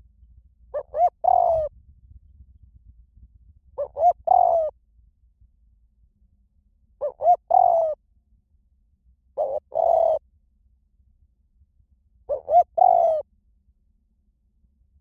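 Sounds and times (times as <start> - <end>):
dove cooing: 0.7 - 1.7, 3.8 - 4.7, 7.0 - 8.0, 9.4 - 10.2, 12.3 - 13.2.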